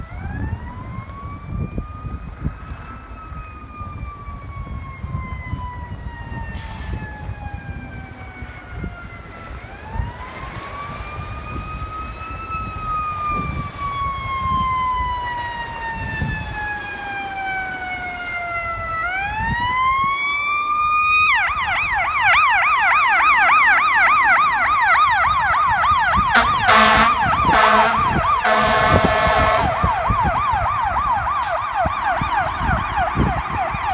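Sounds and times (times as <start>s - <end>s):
fire truck siren wailing and yelping: 0.0s - 33.9s
diesel engine rumble: 5.0s - 33.9s
air horn blasts: 26.3s - 30.1s.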